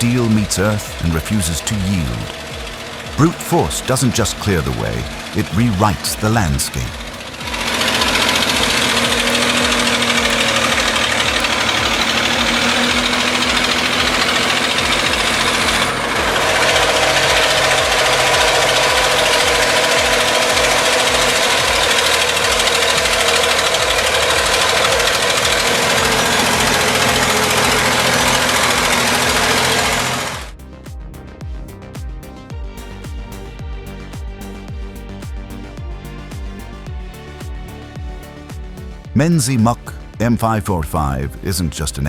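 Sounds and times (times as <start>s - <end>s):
bulldozer diesel engine under load: 0.0s - 30.5s.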